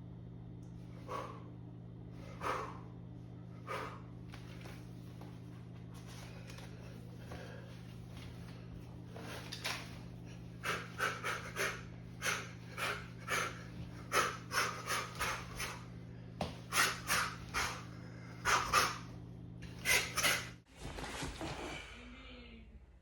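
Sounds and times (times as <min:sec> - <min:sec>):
steady low hum: 0:00.0 - 0:20.7
rapid panting breaths: 0:00.9 - 0:01.6, 0:02.2 - 0:03.0, 0:03.6 - 0:04.2, 0:10.3 - 0:16.0, 0:16.6 - 0:19.1.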